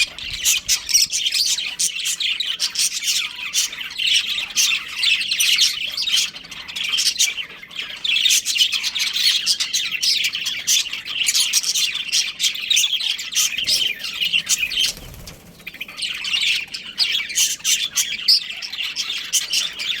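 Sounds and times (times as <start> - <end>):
budgerigars chirping and chattering: 0.0 - 20.0.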